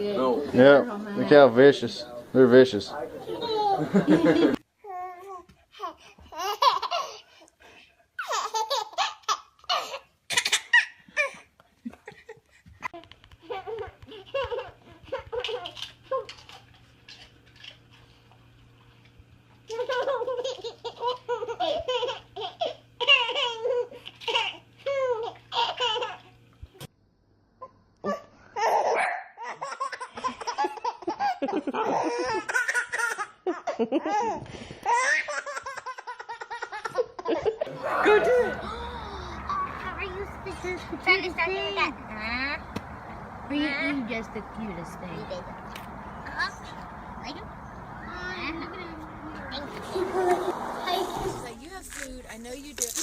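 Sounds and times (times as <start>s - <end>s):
young child laughing: 3.3s - 4.6s, 28.0s - 41.0s, 49.8s - 51.5s.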